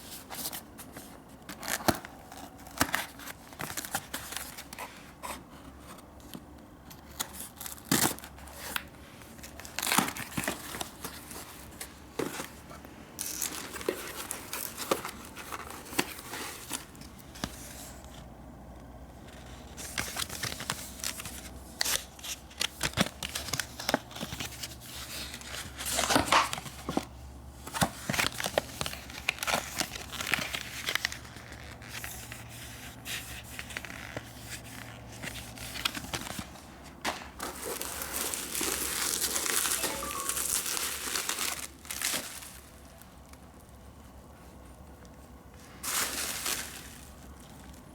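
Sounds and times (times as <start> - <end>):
packaging crinkling and tearing: 7.0 - 18.2, 19.3 - 27.1, 27.7 - 32.5, 33.1 - 43.8, 45.8 - 47.9.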